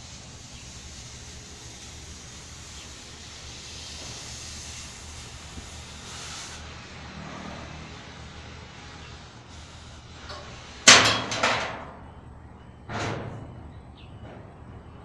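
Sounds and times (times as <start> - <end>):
brief loud hiss: 0.0 - 6.7.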